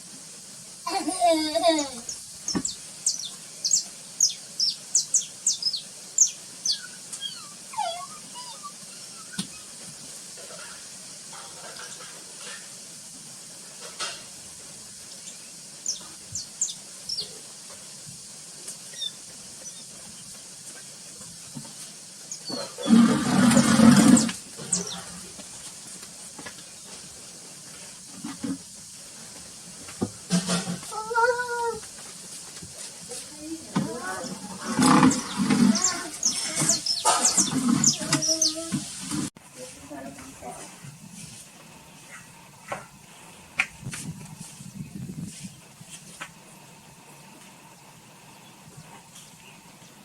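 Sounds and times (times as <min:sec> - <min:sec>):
birds chirping: 0:01.8 - 0:12.2, 0:15.1 - 0:17.5, 0:18.7 - 0:25.8, 0:33.4 - 0:39.0.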